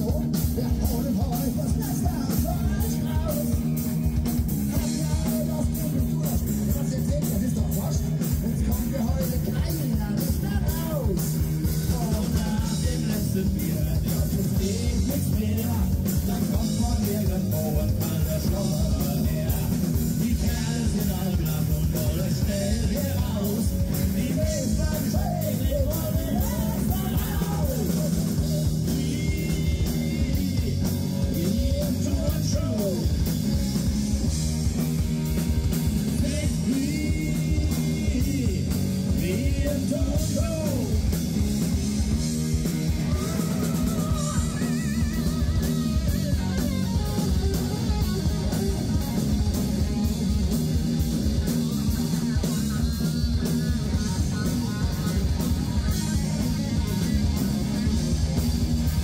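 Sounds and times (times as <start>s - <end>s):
drum kit: 0.0s - 59.0s
electric guitar: 0.0s - 59.0s
live rock band playing: 0.0s - 59.0s.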